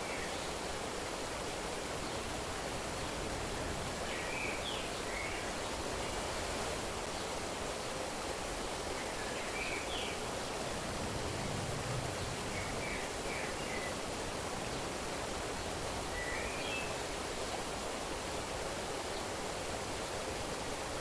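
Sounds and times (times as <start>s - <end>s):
flowing water rushing: 0.0s - 21.0s
faint bird chirps: 15.6s - 17.0s.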